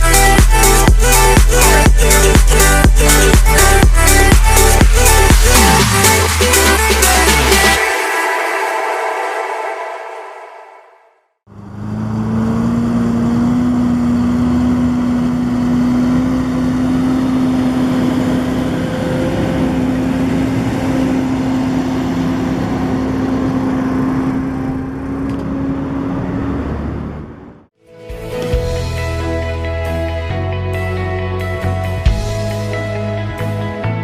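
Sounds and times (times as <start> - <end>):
farm machinery engine running: 11.5 - 27.6.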